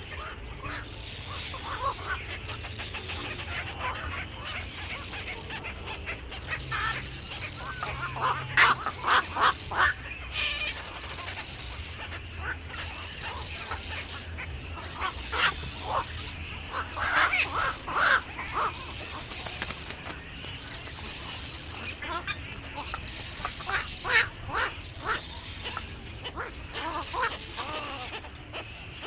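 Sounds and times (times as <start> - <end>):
birds calling: 0.0 - 29.0
low steady hum: 0.0 - 29.0.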